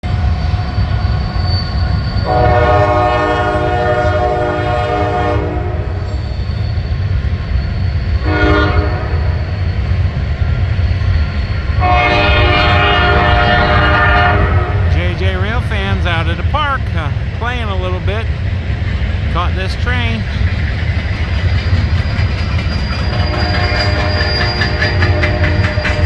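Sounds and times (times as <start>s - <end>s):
freight train rumbling: 0.0s - 26.0s
locomotive air horn blasts: 2.2s - 6.0s, 8.2s - 9.2s, 11.8s - 14.9s.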